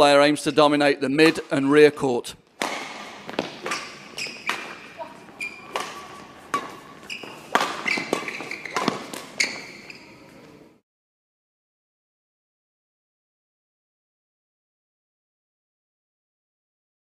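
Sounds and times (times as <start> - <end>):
racket hitting shuttlecock: 2.5 - 10.1
shoes squeaking on court floor: 2.7 - 10.8.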